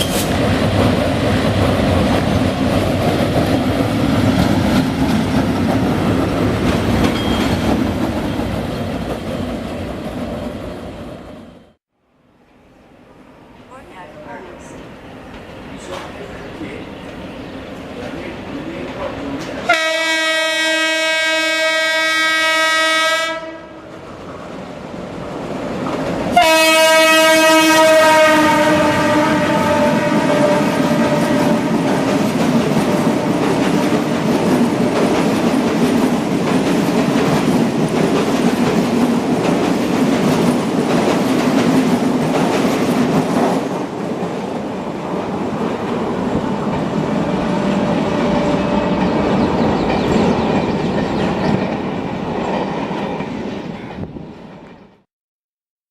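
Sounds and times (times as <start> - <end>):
train rumbling past: 0.0 - 11.8, 12.4 - 55.1
locomotive horn blasts: 19.7 - 23.8, 26.4 - 31.9, 47.3 - 49.2.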